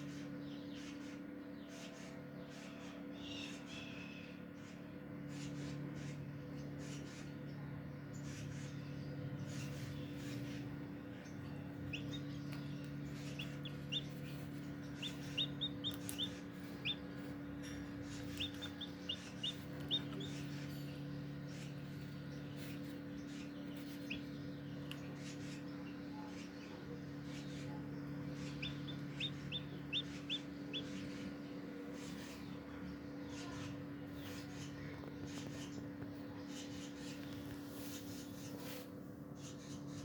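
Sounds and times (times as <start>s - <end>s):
steady low hum: 0.0s - 40.0s
chick peeping: 9.4s - 38.8s.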